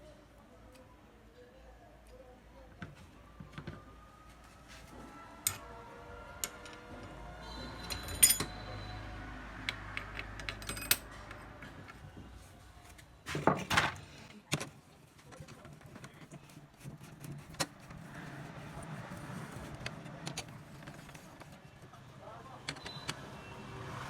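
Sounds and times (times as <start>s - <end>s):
metal tools clinking on workbench: 7.7s - 8.8s, 10.4s - 11.4s.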